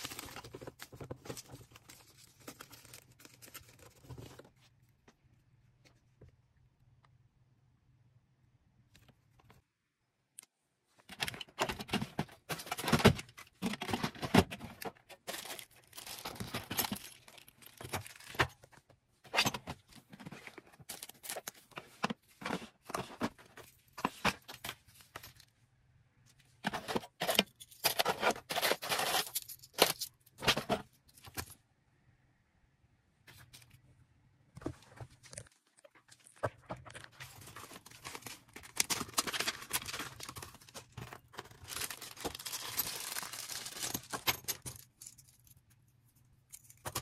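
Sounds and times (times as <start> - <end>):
plastic packaging crinkling: 0.0 - 4.5, 35.2 - 44.3.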